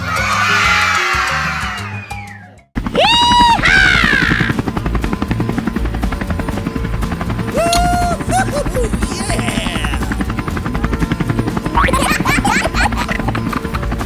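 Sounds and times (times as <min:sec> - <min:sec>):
short rising pitched calls: 0:00.0 - 0:04.6, 0:07.5 - 0:10.5
fast mechanical chopping rhythm: 0:02.8 - 0:14.0.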